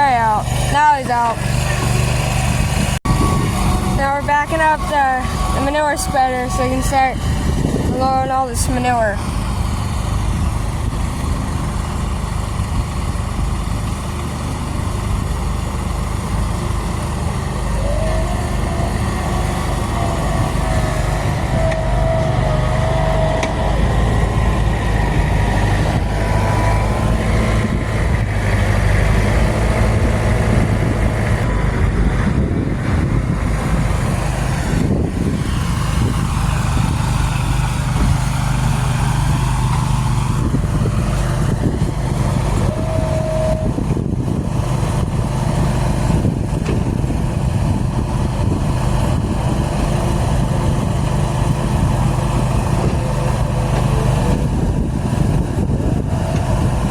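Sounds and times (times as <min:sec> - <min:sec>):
farm machinery engine running: 0:00.0 - 0:56.9
thin wavering whine: 0:03.0 - 0:09.2.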